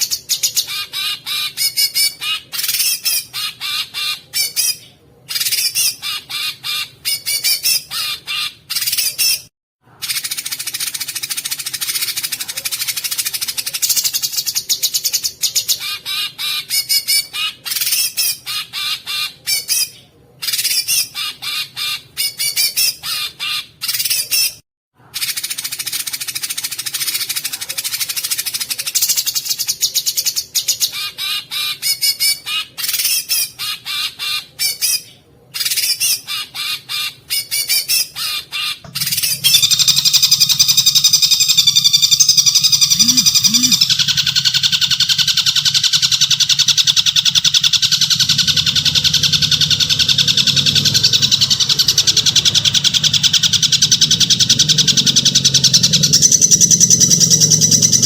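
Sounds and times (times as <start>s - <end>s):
songbirds singing: 25.3s - 58.0s.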